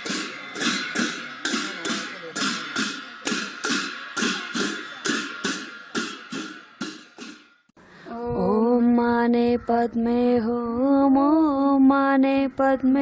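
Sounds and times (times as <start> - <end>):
sharp percussion strikes: 0.0 - 7.8.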